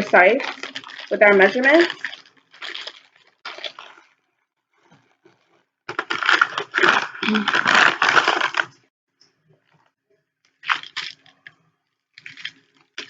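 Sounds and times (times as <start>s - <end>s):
packaging crinkling and tearing: 0.0s - 4.2s, 5.9s - 8.8s, 10.6s - 11.6s, 12.2s - 13.0s.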